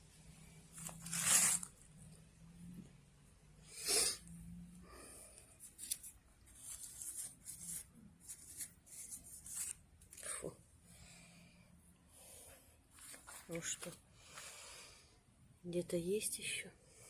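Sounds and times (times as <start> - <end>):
rustling handling noises: 5.4 - 10.4, 12.9 - 14.5.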